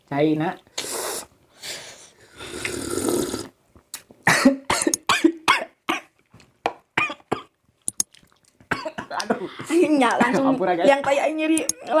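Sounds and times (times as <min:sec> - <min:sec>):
person slurping: 0:00.7 - 0:03.6
person coughing: 0:04.3 - 0:06.1, 0:08.7 - 0:10.4.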